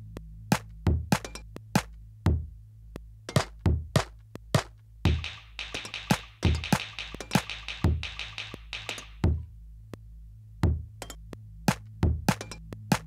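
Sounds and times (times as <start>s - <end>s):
hissy quick hits: 5.1s - 9.3s
found-sound drum hits: 5.1s - 9.4s.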